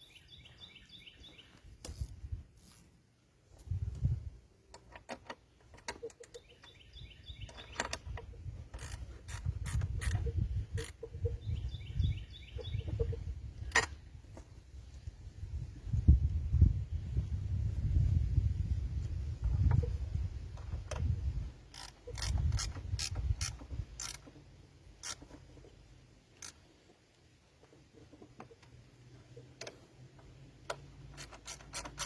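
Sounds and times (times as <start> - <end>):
bird singing: 0.0 - 1.7, 5.8 - 9.0, 10.0 - 13.4
tools clicking and knocking on wood: 4.6 - 6.8, 7.4 - 11.0, 20.5 - 25.8, 27.6 - 28.8, 29.4 - 32.0.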